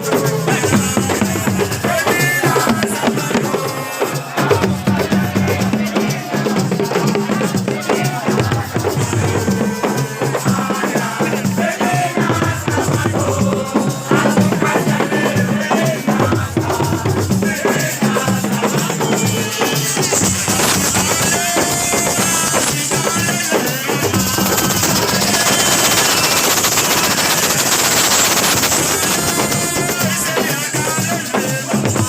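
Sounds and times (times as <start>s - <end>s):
drum-led music with rattles: 0.0s - 32.0s
voices singing: 0.0s - 32.0s.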